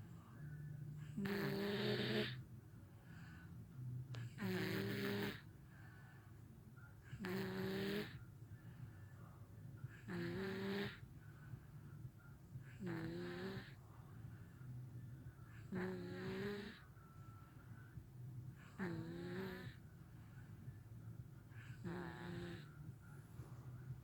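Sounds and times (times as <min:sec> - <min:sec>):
soft breaths: 0:00.0 - 0:24.0
toddler snoring: 0:01.0 - 0:02.4, 0:04.2 - 0:05.5, 0:07.1 - 0:08.2, 0:09.9 - 0:11.1, 0:12.7 - 0:13.8, 0:15.5 - 0:16.9, 0:18.6 - 0:19.8, 0:21.6 - 0:22.8.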